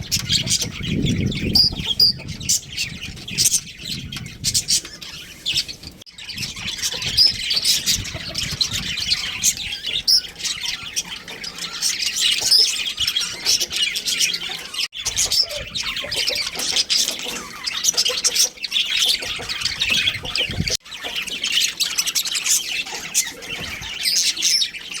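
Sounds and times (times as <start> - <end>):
budgerigars chirping and chattering: 0.0 - 25.0.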